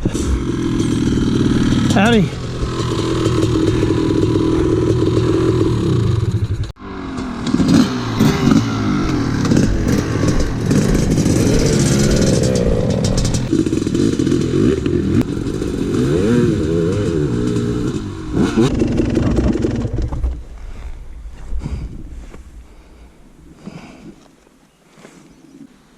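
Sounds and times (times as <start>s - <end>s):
dirt bike engine revving: 0.0s - 20.4s
rattling: 18.6s - 20.8s.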